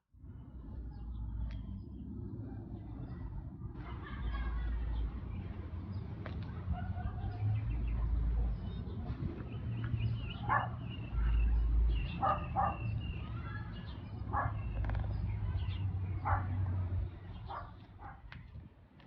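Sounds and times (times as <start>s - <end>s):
birds chirping: 4.0s - 18.4s
dog barking: 10.4s - 11.4s, 12.1s - 12.9s, 14.3s - 14.6s, 16.2s - 16.6s, 17.5s - 18.3s.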